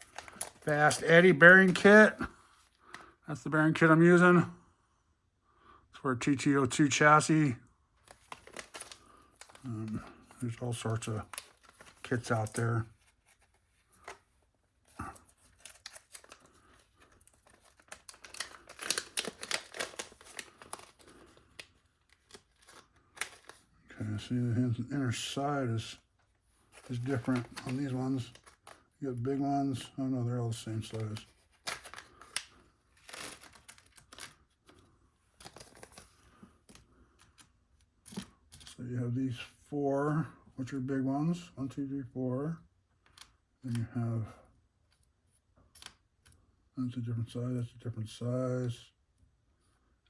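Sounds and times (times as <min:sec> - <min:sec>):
plastic packaging crinkling: 0:00.0 - 0:02.2, 0:08.0 - 0:14.2, 0:14.8 - 0:23.8, 0:26.6 - 0:29.8, 0:30.4 - 0:37.5
light rustling of small parts: 0:00.0 - 0:03.2, 0:08.0 - 0:39.5
faint clicks of small bearings: 0:45.7 - 0:46.4.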